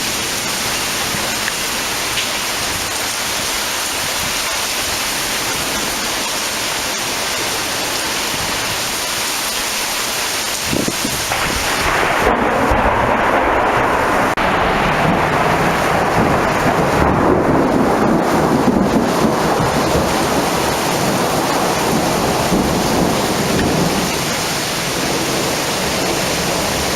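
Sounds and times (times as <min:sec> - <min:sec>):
heavy rain: 0:00.0 - 0:26.9
thunder rolling: 0:10.6 - 0:26.9.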